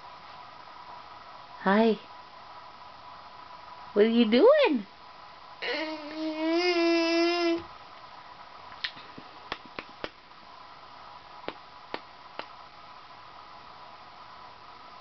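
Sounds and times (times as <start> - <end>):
baby's held vocal sound: 5.6 - 7.7.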